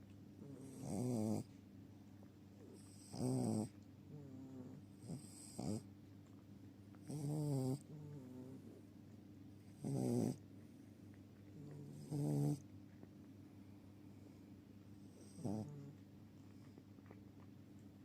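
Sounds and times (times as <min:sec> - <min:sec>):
dog snoring: 0:00.4 - 0:01.6, 0:02.6 - 0:05.9, 0:07.0 - 0:08.8, 0:09.6 - 0:10.4, 0:11.6 - 0:12.7, 0:15.0 - 0:16.0.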